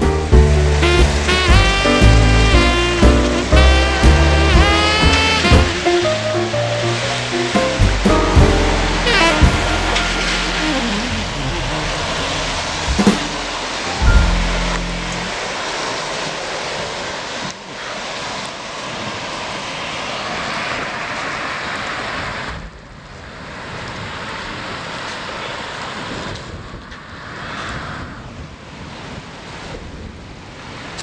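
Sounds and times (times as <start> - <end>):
running floodwater: 0.0 - 22.7
heavy rain: 0.0 - 26.2.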